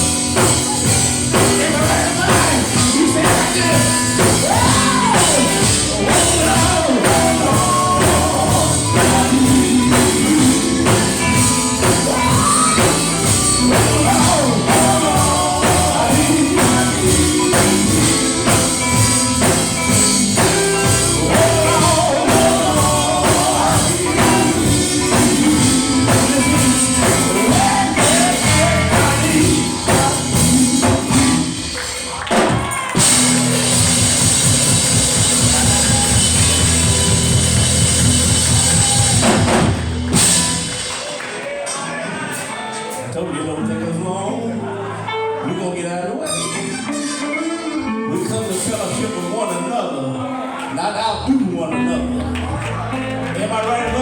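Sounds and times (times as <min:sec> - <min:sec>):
group singing gospel: 0:00.0 - 0:41.2
band with drums: 0:00.0 - 0:42.8.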